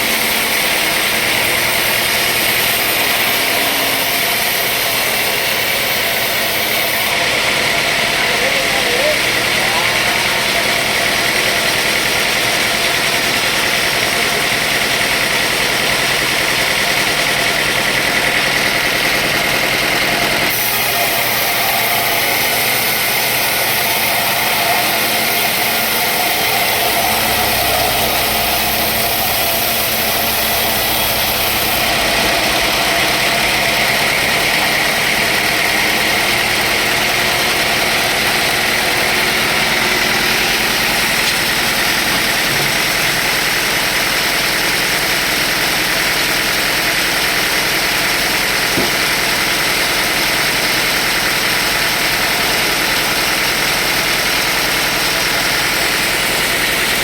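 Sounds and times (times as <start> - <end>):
sawmill machinery running: 0.0 - 57.0.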